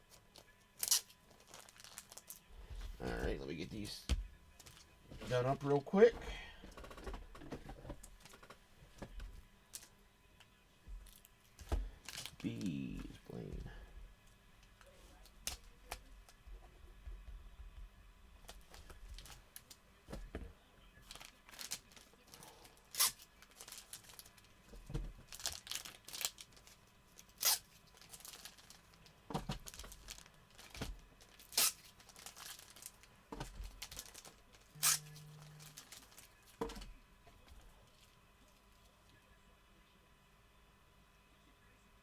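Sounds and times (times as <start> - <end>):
wrappers tearing and crinkling: 0.4 - 2.5, 12.0 - 13.5, 18.5 - 19.8, 21.0 - 24.6, 25.2 - 36.9.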